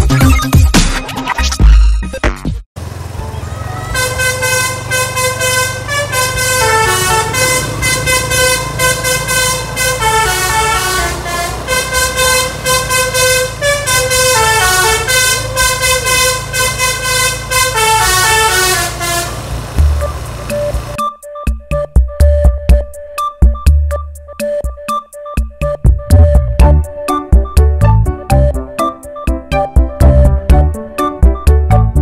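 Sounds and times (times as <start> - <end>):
low engine hum: 2.8 - 21.0
multi-tone bus horn melody: 2.8 - 21.1.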